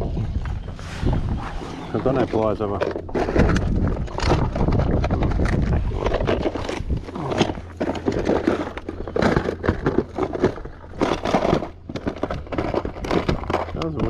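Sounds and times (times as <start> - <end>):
fish thrashing against kayak hull: 2.8 - 13.8.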